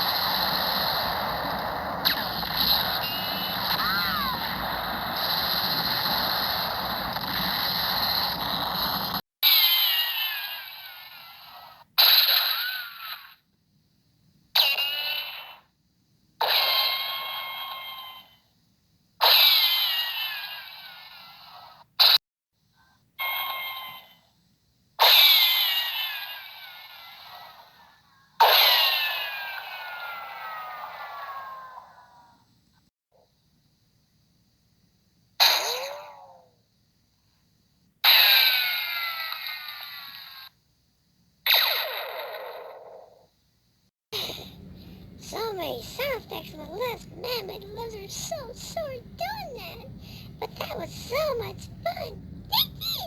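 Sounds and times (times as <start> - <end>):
cartoon gunshot ricochet: 35.4 - 36.3, 38.0 - 39.8, 41.5 - 43.0.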